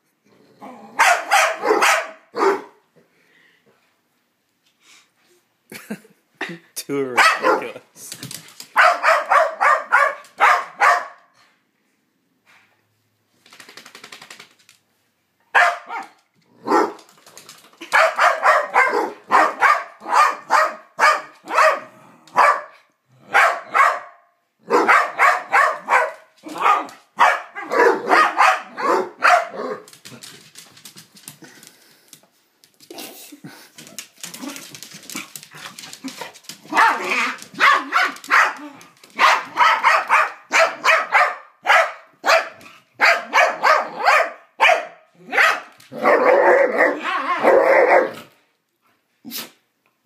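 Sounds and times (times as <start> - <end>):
dogs play-barking: 0.6 - 2.8, 8.6 - 11.3, 15.5 - 17.2, 17.8 - 30.4, 34.2 - 48.4.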